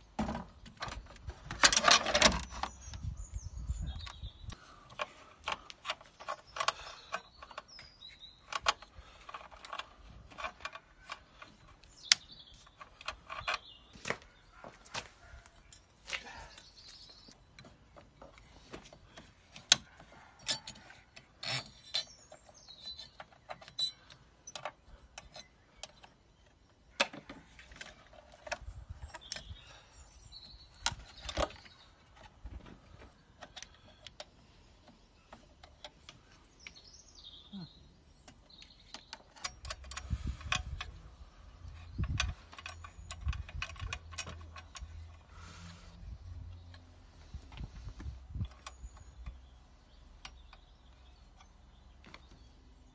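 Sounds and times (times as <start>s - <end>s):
hand tools clicking and knocking: 4.9s - 14.3s, 15.0s - 29.6s, 38.2s - 41.0s, 41.6s - 45.4s.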